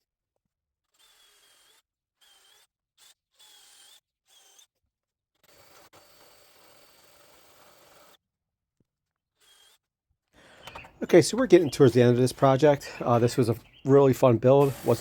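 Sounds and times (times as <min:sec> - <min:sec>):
power drill motor whine: 0:10.4 - 0:10.9.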